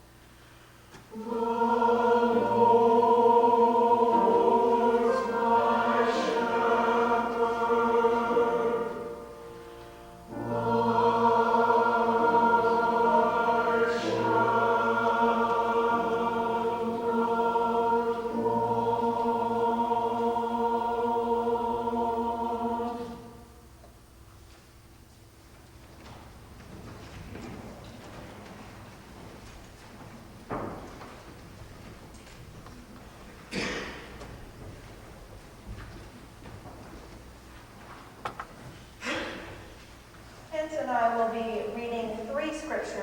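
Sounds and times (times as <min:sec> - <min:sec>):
choir singing held chords: 0:01.1 - 0:23.8.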